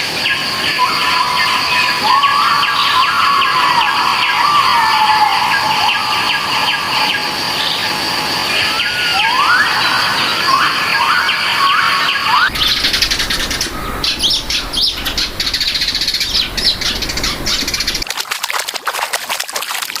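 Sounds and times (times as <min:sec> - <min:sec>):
birds chirping: 0:00.1 - 0:18.1
fast pulsing buzz: 0:05.8 - 0:18.0.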